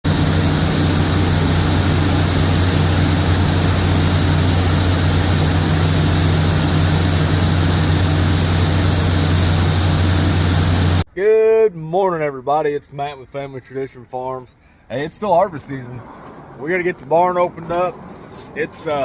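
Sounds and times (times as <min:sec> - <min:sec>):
engine running steadily: 0:00.0 - 0:11.0.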